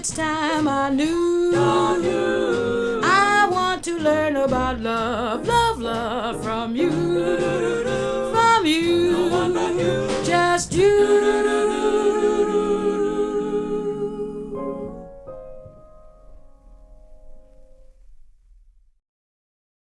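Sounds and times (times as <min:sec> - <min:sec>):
woman singing jazz: 0:00.0 - 0:15.0
light accompaniment: 0:00.0 - 0:18.3.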